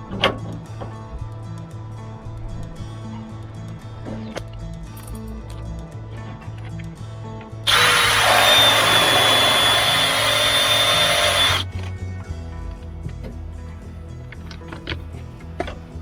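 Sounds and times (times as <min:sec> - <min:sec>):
power tool whining: 0:07.7 - 0:11.7.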